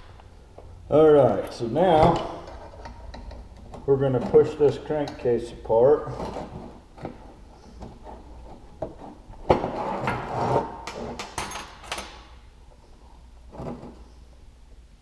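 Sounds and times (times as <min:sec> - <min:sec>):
metal clicks knocks and scraping: 0:01.3 - 0:05.3.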